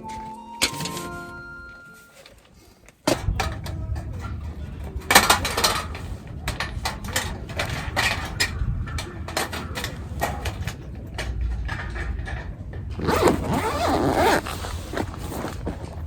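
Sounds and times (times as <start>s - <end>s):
steady low rumble: 3.2s - 13.5s.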